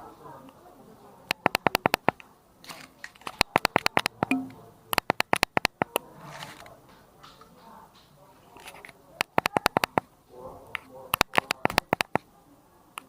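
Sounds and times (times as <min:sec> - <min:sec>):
sharp clicks in quick runs: 0:05.0 - 0:05.9, 0:11.2 - 0:12.2.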